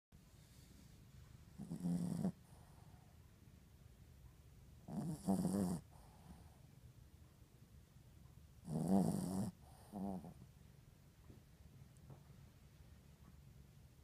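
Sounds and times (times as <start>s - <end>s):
dog snoring: 1.5s - 3.1s, 4.8s - 6.6s, 8.6s - 10.4s.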